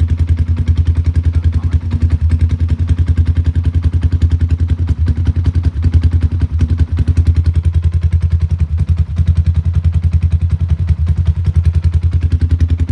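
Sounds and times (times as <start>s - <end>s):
motorcycle engine idling: 0.0s - 12.9s.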